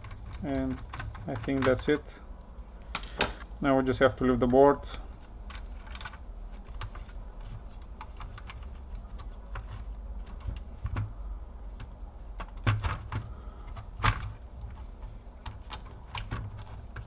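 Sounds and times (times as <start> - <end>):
plastic clatter: 5.4 - 17.0.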